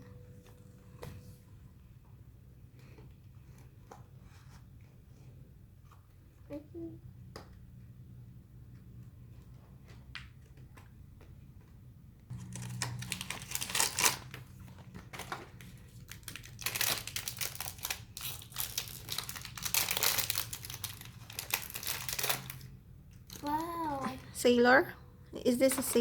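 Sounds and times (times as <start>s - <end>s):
wrapping rustling and tearing: 12.3s - 22.7s.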